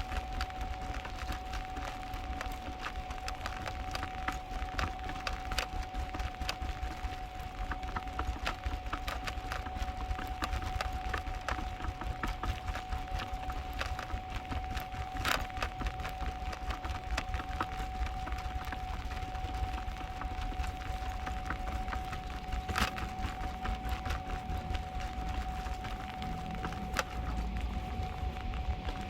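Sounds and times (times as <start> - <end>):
stroller wheels rattling on pavement: 0.0 - 29.0
steady high tone: 22.7 - 29.0.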